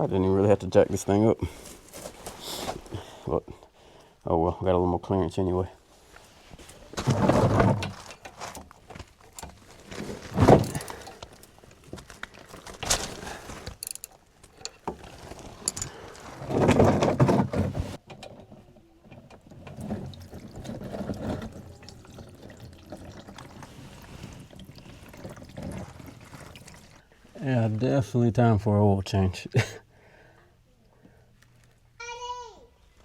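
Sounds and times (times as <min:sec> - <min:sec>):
hand tools clinking and ratcheting: 0:10.3 - 0:17.2
oil pouring out: 0:19.5 - 0:27.1.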